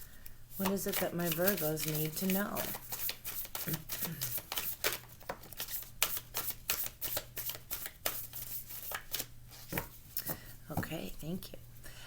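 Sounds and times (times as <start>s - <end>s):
cards being shuffled: 0.5s - 10.0s.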